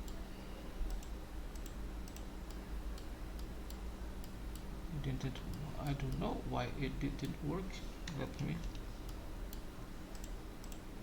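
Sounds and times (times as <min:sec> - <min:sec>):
steady low hum: 0:00.0 - 0:11.0.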